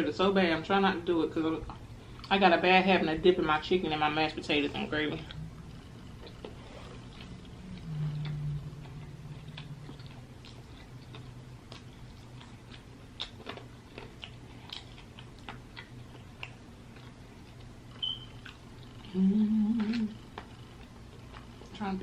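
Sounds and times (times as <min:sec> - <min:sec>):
closed-mouth hum: 0:00.8 - 0:22.0
chewing and wet mouth clicks: 0:04.4 - 0:19.2.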